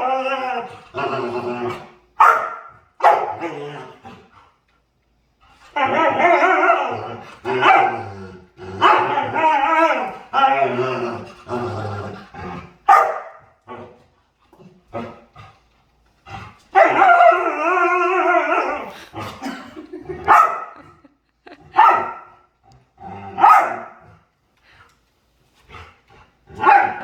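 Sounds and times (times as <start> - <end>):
dog barking and yipping: 2.2 - 3.5, 7.6 - 8.0, 12.9 - 13.5, 16.7 - 17.5, 20.2 - 20.8, 21.7 - 22.3, 23.4 - 24.1, 26.6 - 27.0.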